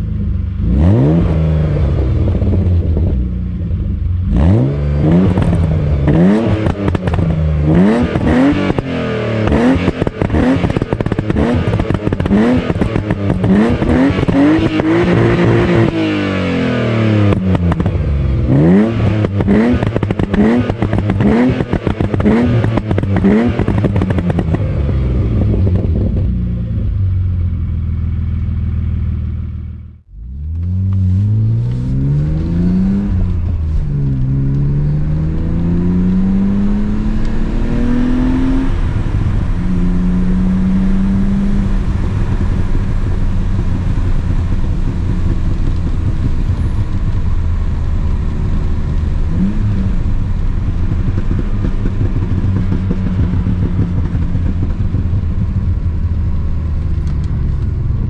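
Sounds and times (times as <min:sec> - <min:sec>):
car engine revving: 0:00.0 - 0:58.0
exhaust pops and crackles: 0:05.1 - 0:16.0, 0:17.2 - 0:26.5, 0:41.4 - 0:58.0.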